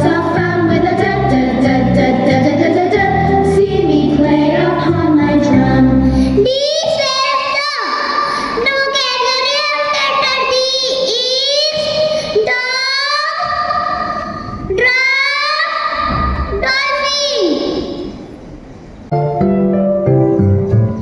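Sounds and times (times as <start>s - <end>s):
children's song with instrumental backing: 0.0s - 15.3s
child singing alone: 0.0s - 18.2s.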